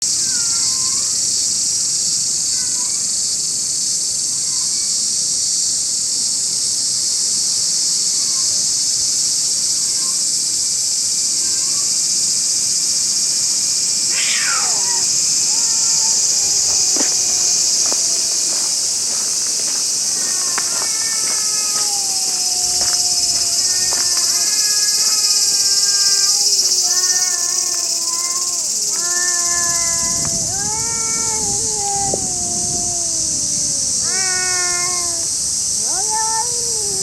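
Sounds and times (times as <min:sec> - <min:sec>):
high-pitched insect chorus: 0:00.0 - 0:37.0
cats yowling: 0:00.2 - 0:01.3, 0:13.8 - 0:37.0.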